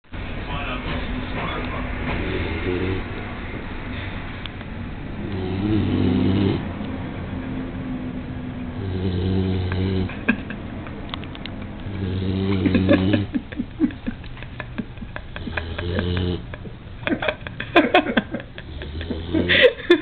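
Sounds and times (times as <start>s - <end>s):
droning snores: 2.1s - 3.4s, 5.1s - 6.8s, 8.7s - 10.4s, 11.8s - 13.4s, 15.4s - 16.5s, 18.4s - 19.8s
faint breathing: 3.9s - 4.4s, 19.1s - 19.9s.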